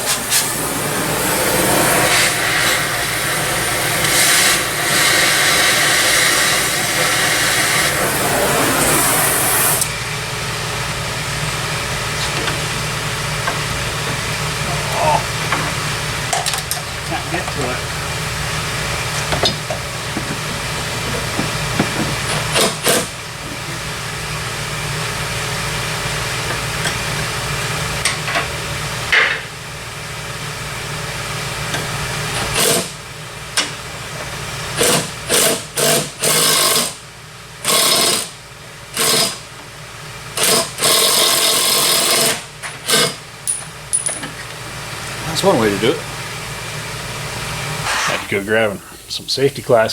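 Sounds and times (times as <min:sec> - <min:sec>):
steady noisy hum: 0:00.0 - 0:49.9
pneumatic impact wrench hammering: 0:01.6 - 0:09.9, 0:19.2 - 0:23.6, 0:31.7 - 0:33.0, 0:34.7 - 0:37.0, 0:37.6 - 0:39.7, 0:40.3 - 0:44.4.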